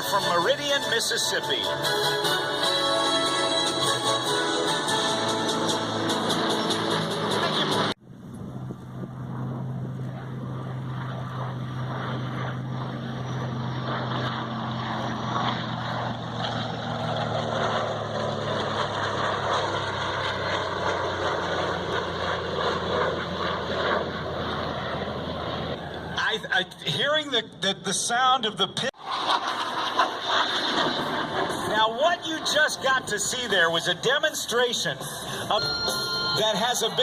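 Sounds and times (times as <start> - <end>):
jet engine rushing: 0.0 - 37.0
low hum: 1.7 - 26.2.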